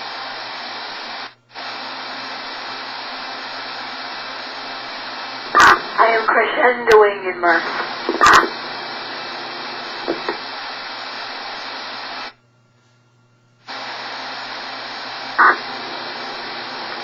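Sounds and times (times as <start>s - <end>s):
radio receiver hiss and static: 0.0s - 12.4s, 13.6s - 17.0s
short radio burst: 3.4s - 12.3s, 13.7s - 17.0s.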